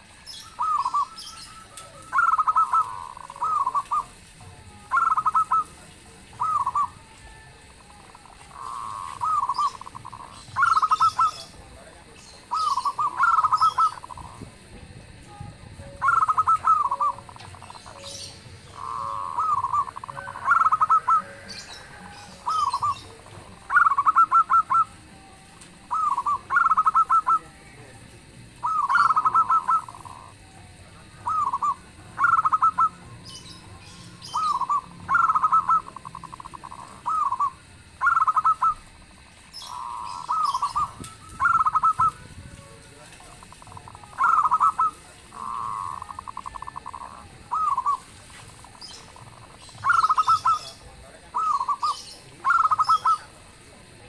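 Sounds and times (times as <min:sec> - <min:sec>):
faint high bird chirps: 0:00.0 - 0:14.5, 0:15.3 - 0:27.9, 0:28.6 - 0:42.6, 0:43.2 - 0:53.4
dove cooing: 0:00.0 - 0:54.0.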